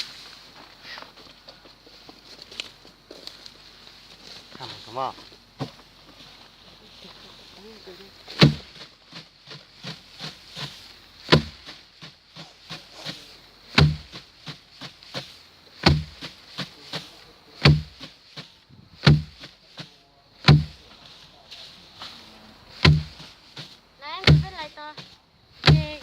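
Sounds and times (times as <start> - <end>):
light ticks and rustles: 0.0 - 17.4
rice sheaves thudding: 4.4 - 26.0.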